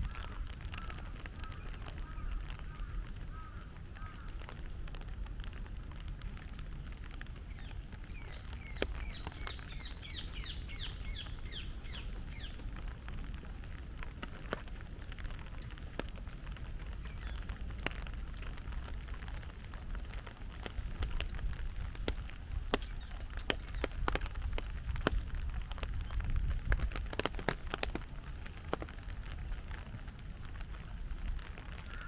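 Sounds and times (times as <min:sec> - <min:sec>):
heavy rain: 0:00.0 - 0:32.0
sharp rain drop ticks: 0:00.0 - 0:32.0
songbird chirping: 0:07.6 - 0:12.6.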